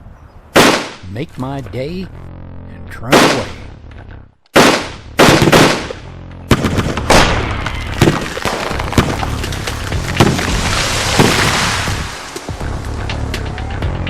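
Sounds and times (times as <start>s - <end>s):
shotgun blasts: 0.5s - 1.0s, 3.1s - 3.6s, 4.5s - 9.2s
background music with a beat: 11.9s - 14.0s.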